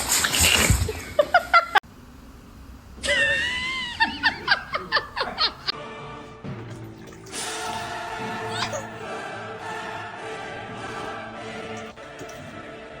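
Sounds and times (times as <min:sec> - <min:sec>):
person laughing: 0:03.0 - 0:05.7
high-pitched wavering cry: 0:08.2 - 0:09.0.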